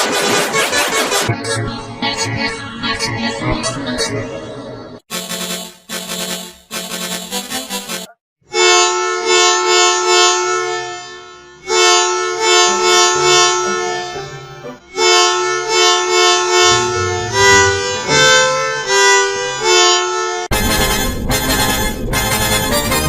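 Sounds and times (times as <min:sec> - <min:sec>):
bus musical air horn: 0:05.1 - 0:23.0.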